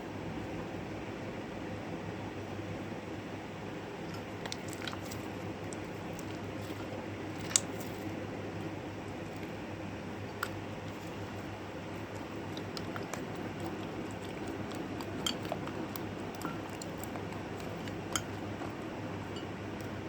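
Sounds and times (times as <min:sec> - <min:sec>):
steady background hum: 0:00.0 - 0:20.0
slime being squished: 0:04.1 - 0:08.2.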